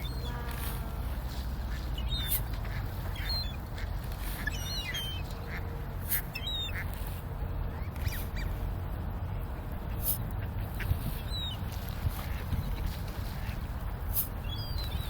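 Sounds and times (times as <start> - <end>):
ducks quacking: 0.0 - 7.0
high chirping calls: 4.4 - 5.3.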